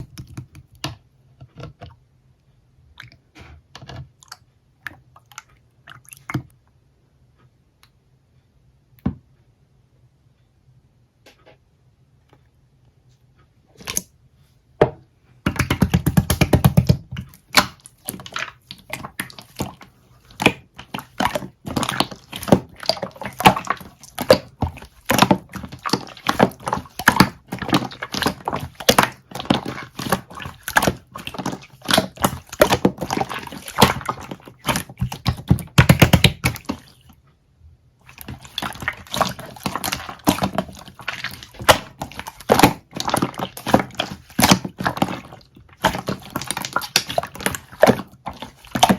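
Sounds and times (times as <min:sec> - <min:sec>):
slime squished by hand: 0:15.5 - 0:37.2, 0:38.0 - 0:48.9.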